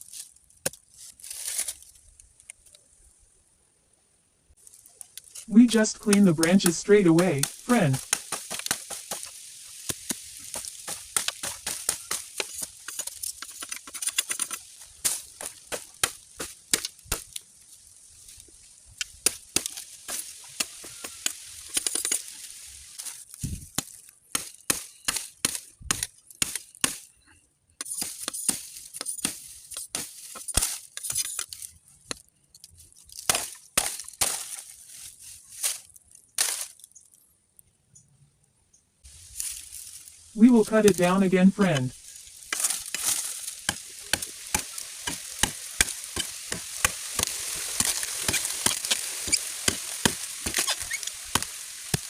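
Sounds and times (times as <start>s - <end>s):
blade chopping bamboo: 6.1s - 17.4s, 19.0s - 22.2s, 23.7s - 27.1s, 27.8s - 31.5s, 33.2s - 34.6s, 42.5s - 52.0s.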